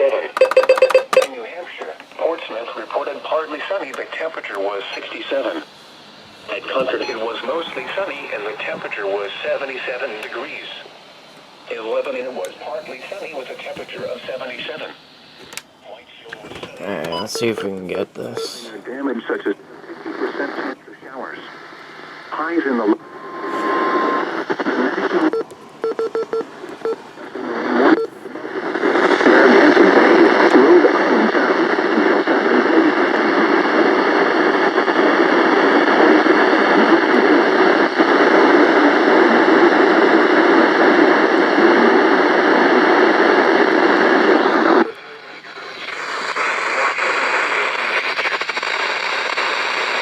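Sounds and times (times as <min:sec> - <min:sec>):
choppy radio tuning noise: 0:00.0 - 0:50.0
radio static hissing: 0:00.0 - 0:50.0
short tones: 0:00.4 - 0:01.3.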